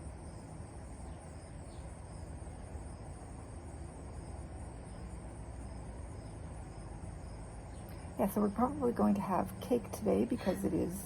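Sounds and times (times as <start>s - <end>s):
cicadas buzzing: 0.0s - 11.0s
low steady rumble: 0.0s - 11.0s.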